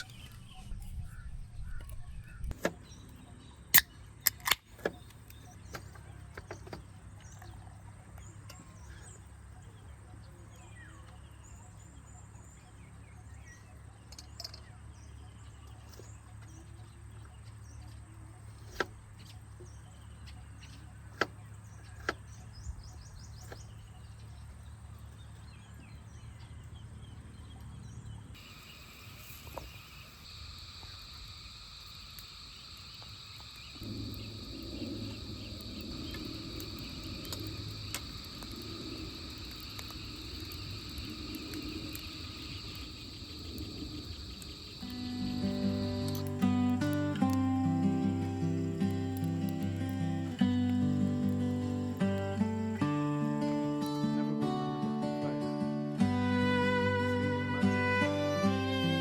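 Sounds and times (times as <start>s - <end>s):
birds chirping faintly: 0.0s - 59.0s
low steady rumble: 27.4s - 46.8s
high insect chorus: 27.8s - 59.0s
sharp cracks: 28.4s - 54.2s.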